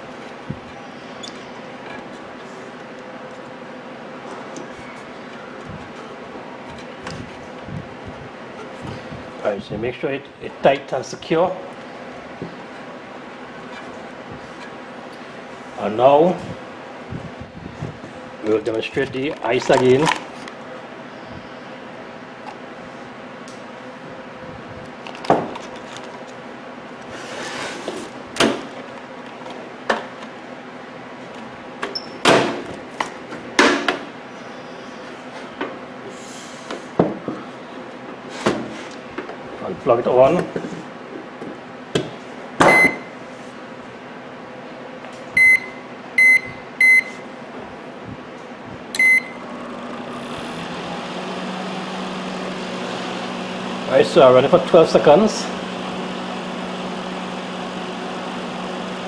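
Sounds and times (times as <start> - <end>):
microwave oven humming: 0.0 - 27.2, 41.0 - 59.0
microwave keypad beeps: 42.7 - 43.1, 45.4 - 47.2, 49.0 - 49.4.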